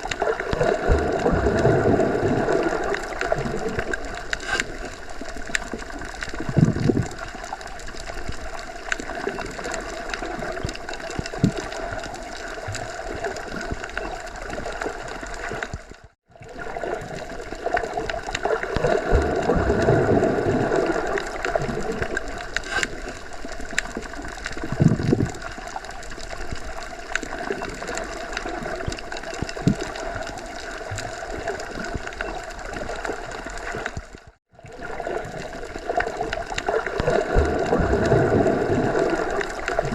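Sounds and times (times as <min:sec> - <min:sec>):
underwater rush and gurgle: 0:00.0 - 0:39.9.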